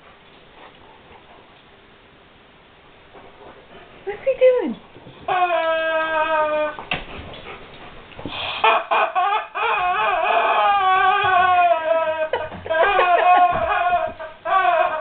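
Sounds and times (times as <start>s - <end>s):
dog whining: 5.1s - 7.0s, 8.3s - 15.0s.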